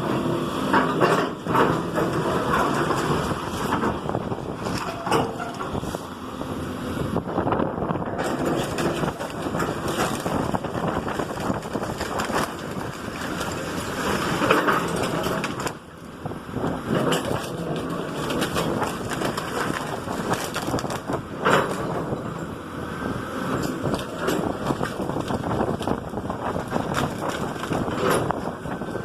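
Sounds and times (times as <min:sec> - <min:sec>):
heavy machinery engine running: 0:00.0 - 0:29.0
debris crunching and cracking: 0:08.0 - 0:15.9, 0:16.7 - 0:22.1, 0:23.6 - 0:28.9.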